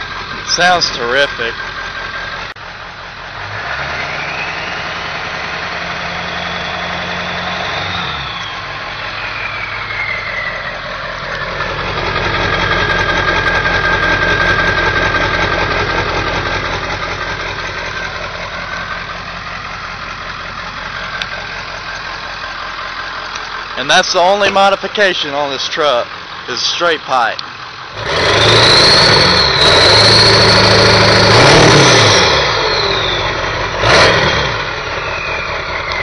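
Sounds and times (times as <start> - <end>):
diesel truck engine revving: 0.0 - 36.0
turbo whistle: 3.9 - 5.3, 5.9 - 11.0, 32.2 - 36.0.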